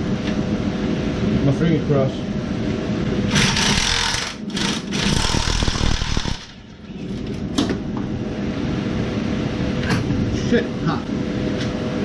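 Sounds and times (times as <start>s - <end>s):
impact wrench hammering: 3.3s - 6.5s.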